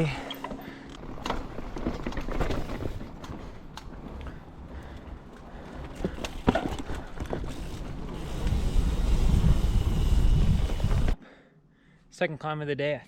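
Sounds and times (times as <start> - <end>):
bike clicks and knocks: 0.3 - 9.6
bike rolling on dirt: 0.4 - 11.2.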